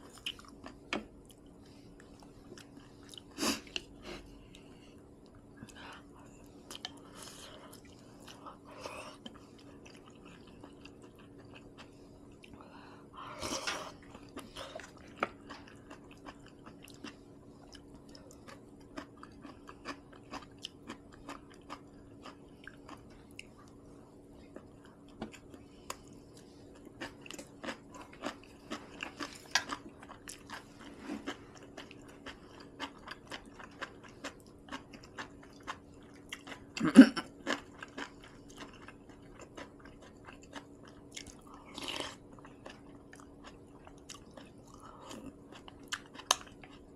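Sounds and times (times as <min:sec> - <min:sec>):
person chewing and biting: 0:24.5 - 0:46.9.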